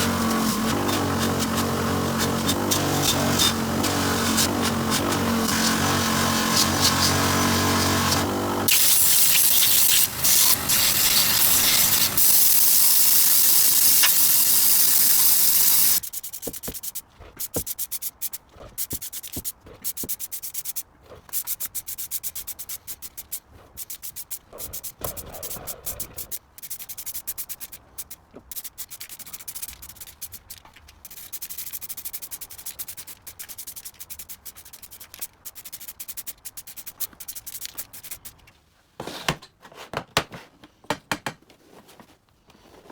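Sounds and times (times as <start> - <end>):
power tool running on metal: 0.0 - 16.0
hand scraping metal: 0.0 - 25.6.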